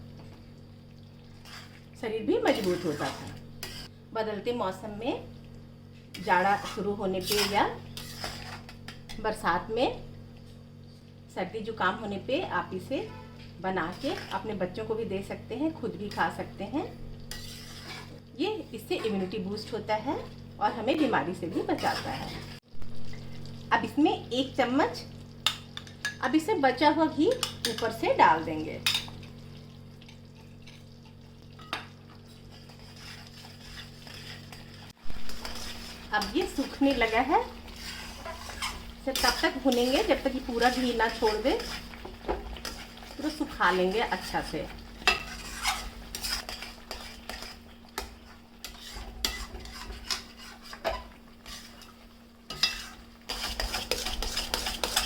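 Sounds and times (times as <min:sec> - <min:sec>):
faint sizzle: 0:00.0 - 0:55.0
spoon scraping in pan: 0:01.3 - 0:04.0, 0:06.2 - 0:09.2, 0:13.8 - 0:14.5, 0:17.2 - 0:18.2, 0:21.6 - 0:22.6, 0:31.6 - 0:55.0
steady low hum: 0:32.2 - 0:55.0.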